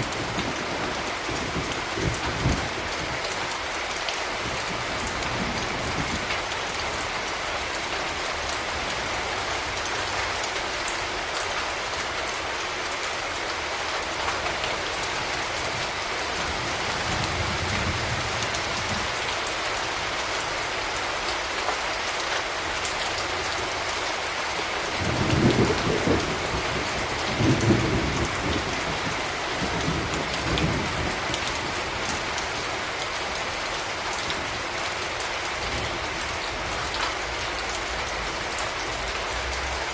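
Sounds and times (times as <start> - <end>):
low thunder rumbles: 0.0 - 3.2, 24.9 - 32.7
steady rain hiss: 0.0 - 39.9.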